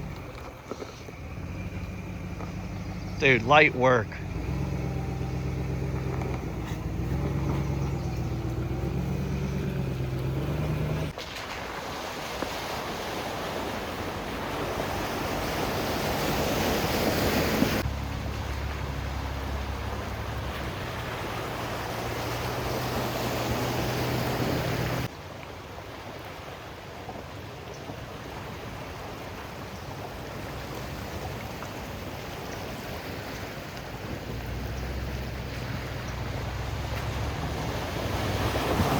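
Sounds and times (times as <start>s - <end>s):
suv engine running at low revs: 0.0s - 11.2s, 14.0s - 25.1s, 34.0s - 38.9s.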